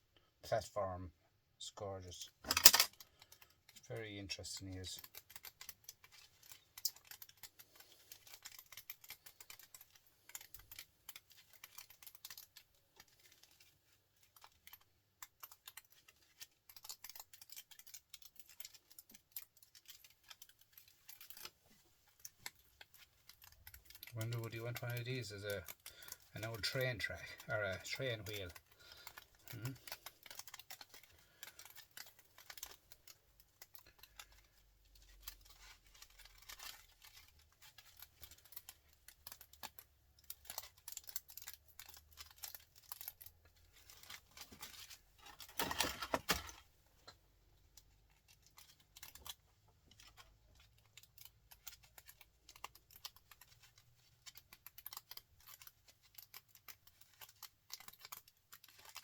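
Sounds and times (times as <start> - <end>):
clicks of scrap parts handled: 2.4 - 3.0, 43.9 - 46.6.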